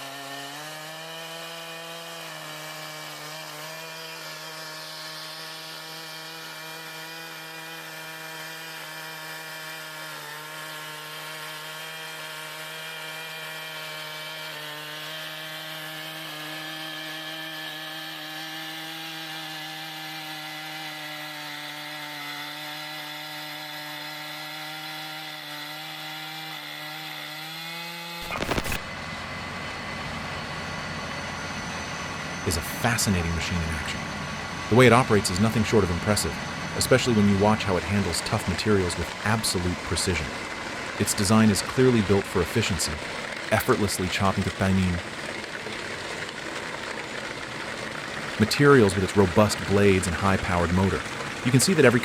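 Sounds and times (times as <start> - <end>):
chainsaw cutting log: 0.0 - 29.9, 31.0 - 52.0.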